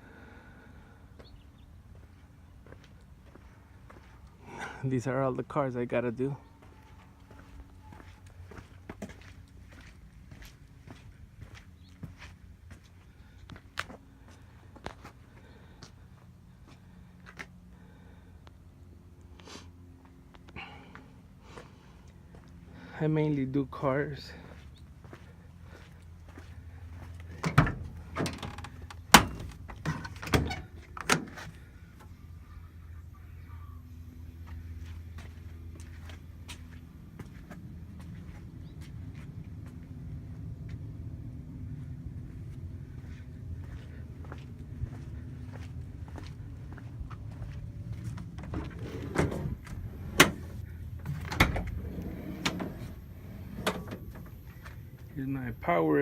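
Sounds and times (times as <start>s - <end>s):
low steady rumble: 24.9s - 56.0s
van door clunks and knocks: 27.4s - 31.4s.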